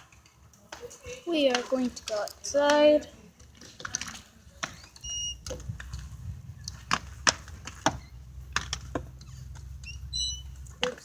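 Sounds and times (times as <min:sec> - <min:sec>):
steady low rumble: 0:05.6 - 0:10.8.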